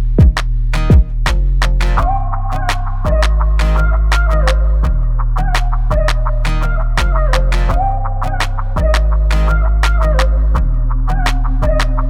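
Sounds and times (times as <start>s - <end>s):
electronic music with steady beat: 0.0s - 2.1s.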